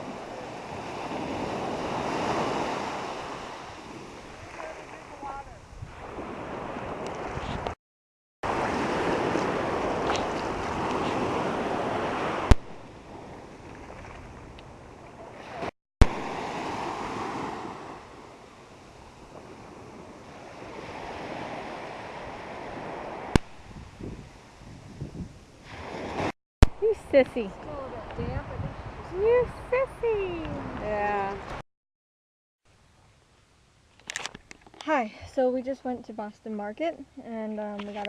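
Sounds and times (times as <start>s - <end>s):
ocean surf on a beach: 0.0s - 7.7s, 8.5s - 24.8s
wind on the microphone: 0.0s - 7.8s, 18.9s - 31.6s.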